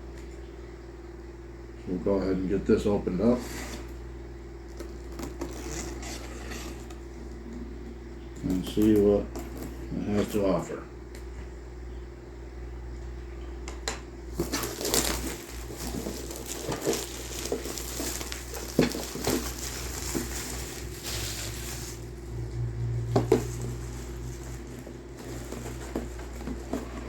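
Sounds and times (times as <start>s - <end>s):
plastic shrink wrap crinkling: 14.3s - 27.0s.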